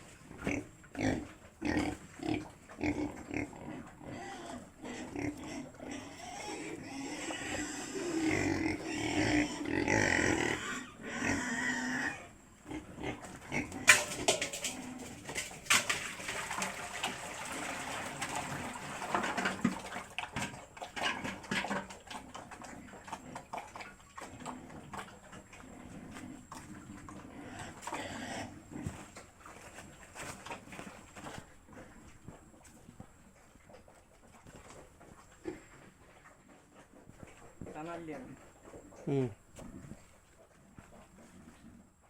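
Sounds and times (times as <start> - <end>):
pigs squealing and grunting: 0.3 - 15.6, 16.6 - 32.8.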